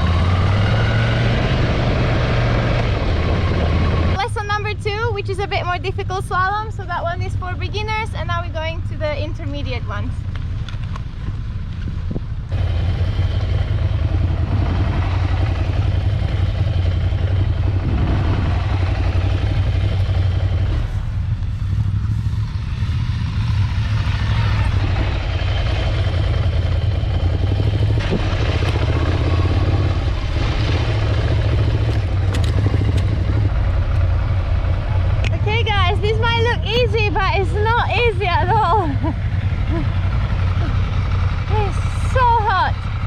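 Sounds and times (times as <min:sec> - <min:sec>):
motorcycle engine at low revs: 0:00.0 - 0:43.0.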